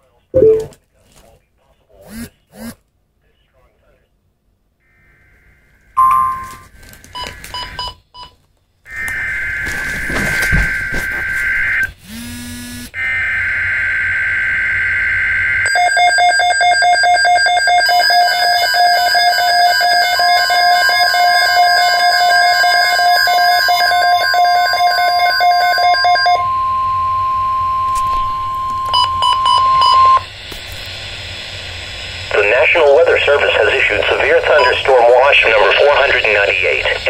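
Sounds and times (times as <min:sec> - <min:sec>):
steady high alert tone: 0:00.4 - 0:00.8
low buzz: 0:11.6 - 0:14.3
fast-pulsing electronic alarm beep: 0:15.6 - 0:30.3.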